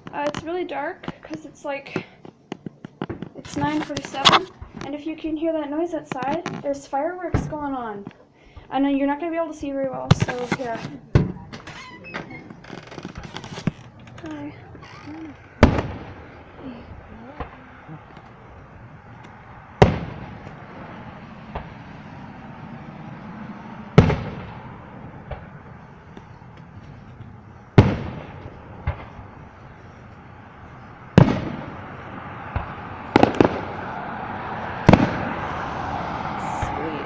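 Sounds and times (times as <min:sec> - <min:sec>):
fireworks loud bangs echoing: 0:15.5 - 0:18.7, 0:19.7 - 0:22.2, 0:23.9 - 0:25.7, 0:27.7 - 0:29.5, 0:31.0 - 0:34.0, 0:34.8 - 0:35.5
small firework pops: 0:25.3 - 0:25.5, 0:26.1 - 0:29.2, 0:31.2 - 0:31.6, 0:32.5 - 0:33.7, 0:34.8 - 0:35.3.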